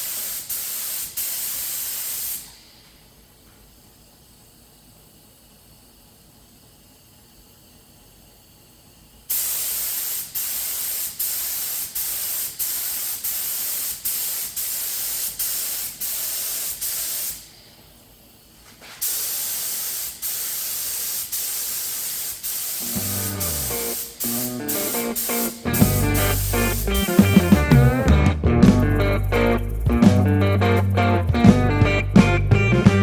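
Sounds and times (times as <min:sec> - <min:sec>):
paint spray gun hissing: 0:00.0 - 0:02.8, 0:09.3 - 0:17.6, 0:18.8 - 0:28.0.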